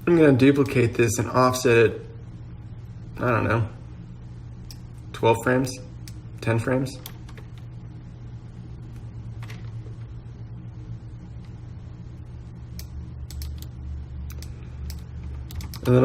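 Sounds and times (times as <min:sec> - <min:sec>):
steady low hum: 0:00.0 - 0:16.0
keyboard and mouse clicks: 0:12.8 - 0:13.7, 0:14.3 - 0:16.0.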